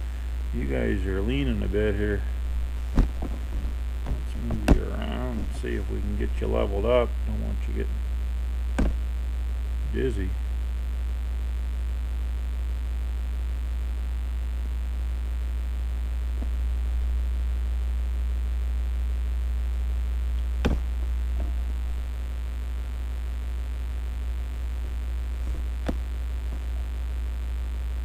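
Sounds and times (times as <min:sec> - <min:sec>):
steady low hum: 0:00.0 - 0:28.0
sharp knocks: 0:02.9 - 0:05.1, 0:08.8 - 0:09.0, 0:20.6 - 0:21.7.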